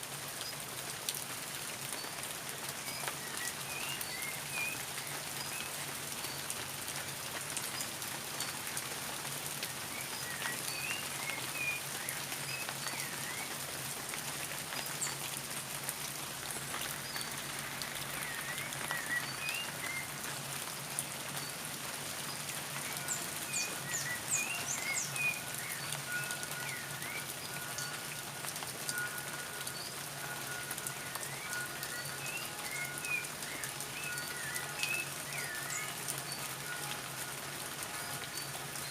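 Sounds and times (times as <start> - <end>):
steady rain falling: 0.0 - 38.9
birds chirping: 22.2 - 28.0.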